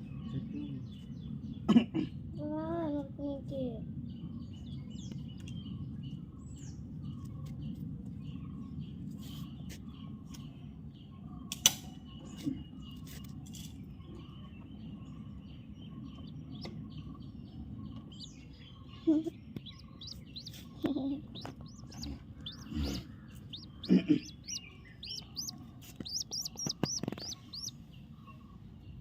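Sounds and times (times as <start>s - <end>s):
faint bird chirps: 8.4s - 29.0s.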